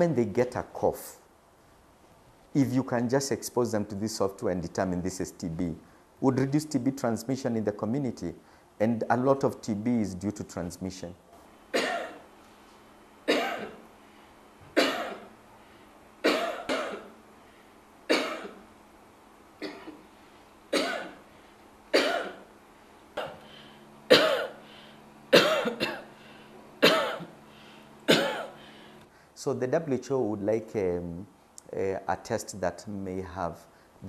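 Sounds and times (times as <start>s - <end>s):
person coughing: 11.7s - 12.2s, 13.3s - 13.8s, 14.8s - 15.3s, 16.2s - 17.2s, 18.1s - 18.6s, 19.6s - 20.0s, 20.7s - 21.2s, 21.9s - 22.5s, 23.2s - 24.6s, 25.3s - 26.2s, 26.8s - 27.4s, 28.1s - 28.8s.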